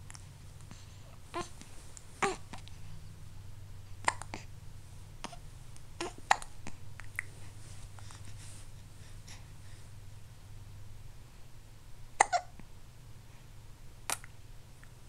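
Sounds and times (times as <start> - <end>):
faint low hum: 0.0 - 15.0
hiccups: 12.2 - 12.6.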